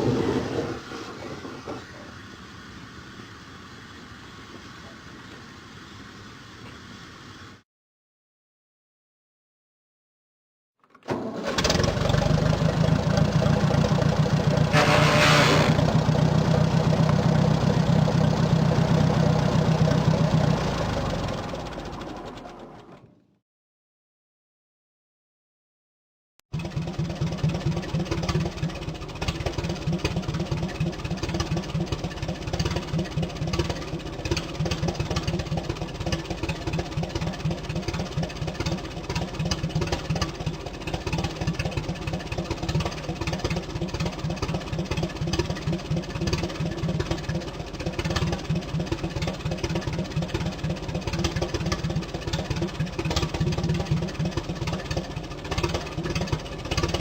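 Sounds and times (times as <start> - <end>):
tractor engine idling: 11.1 - 23.2, 26.6 - 57.0.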